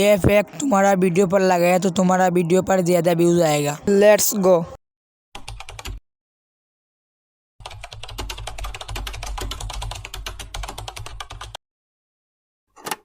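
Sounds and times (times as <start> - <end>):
typing on computer keyboard: 5.4 - 6.0, 7.6 - 11.6.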